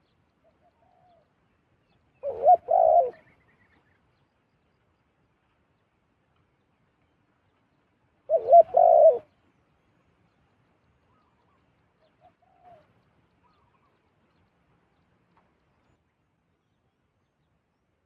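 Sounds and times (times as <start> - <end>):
dove cooing: 2.2 - 3.2, 8.3 - 9.3.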